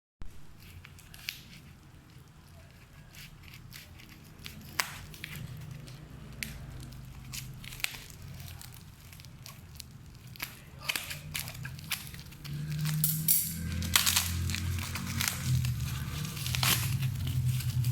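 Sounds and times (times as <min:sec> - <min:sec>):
packaging crinkling and tearing: 0:00.4 - 0:17.9
sharp clicks and crackles: 0:00.6 - 0:17.9.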